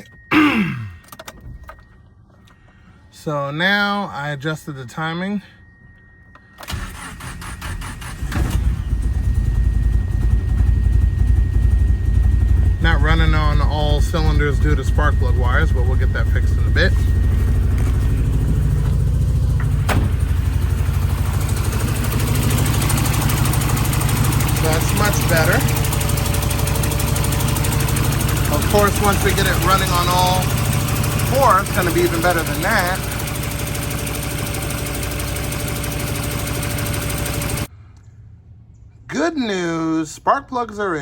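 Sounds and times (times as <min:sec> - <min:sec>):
car engine idling unevenly: 0:08.1 - 0:37.7.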